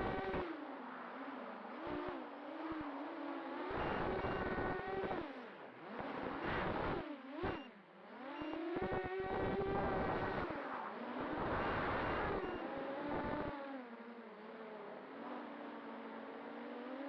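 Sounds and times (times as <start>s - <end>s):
quadcopter motors whining: 3.0s - 5.4s.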